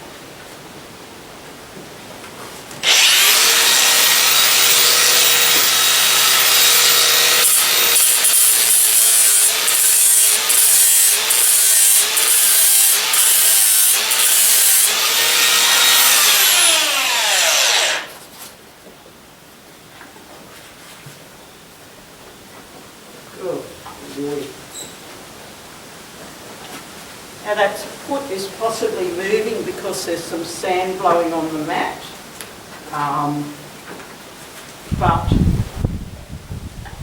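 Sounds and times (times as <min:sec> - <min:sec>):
power grinder grinding hoof: 0:02.8 - 0:18.2.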